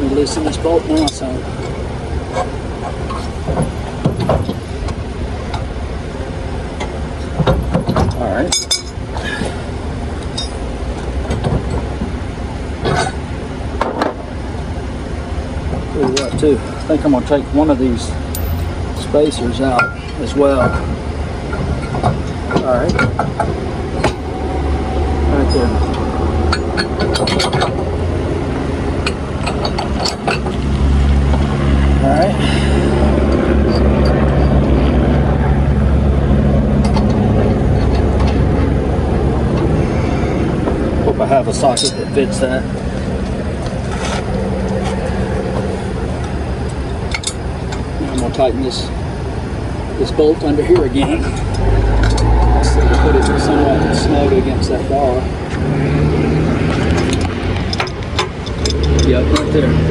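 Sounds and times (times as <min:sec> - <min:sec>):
metallic clinks of wrench: 0:18.3 - 0:19.1
low rumble: 0:23.4 - 0:41.3
truck engine idling: 0:23.4 - 0:41.6.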